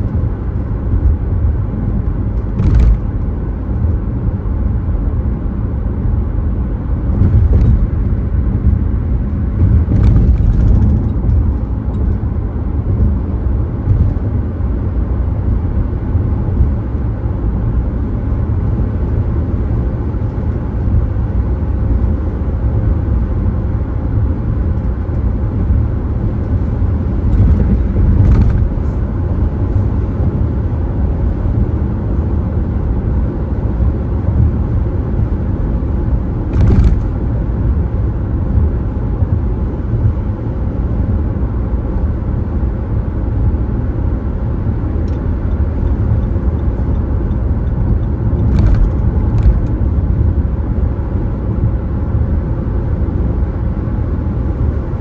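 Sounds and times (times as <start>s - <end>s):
car road and engine rumble: 0.0s - 55.0s.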